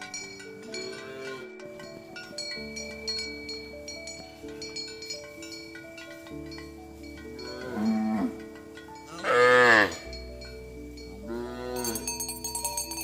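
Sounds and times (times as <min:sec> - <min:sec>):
cows mooing: 0:00.8 - 0:01.6, 0:07.4 - 0:10.2, 0:11.2 - 0:12.2.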